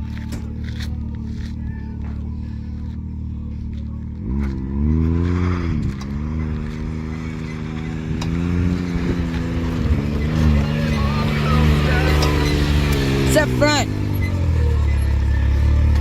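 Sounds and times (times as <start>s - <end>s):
vehicle engine idling and revving: 0.0s - 16.0s
faint clicks from vehicle: 5.8s - 6.9s.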